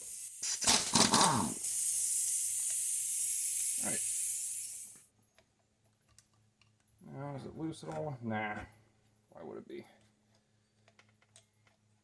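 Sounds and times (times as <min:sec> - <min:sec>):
impact wrench burst: 0:00.0 - 0:05.0
high air hiss: 0:00.0 - 0:05.1.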